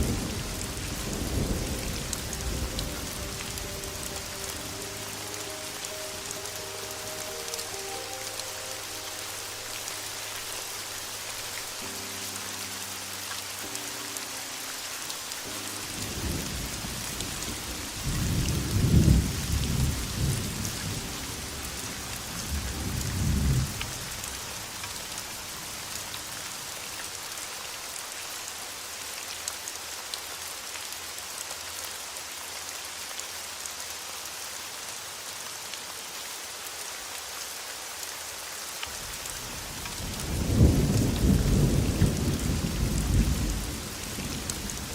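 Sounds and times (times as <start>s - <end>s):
thunder rolling: 0.0s - 4.4s
faint soft music tones: 0.0s - 44.9s
heavy rain: 0.0s - 44.9s.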